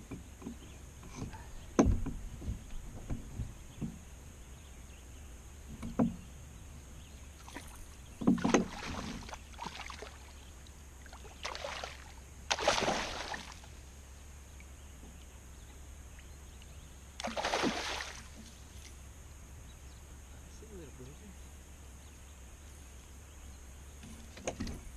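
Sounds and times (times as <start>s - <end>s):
steady low hum: 0.0s - 24.9s
water splashing around boat: 7.3s - 14.0s, 17.2s - 19.0s.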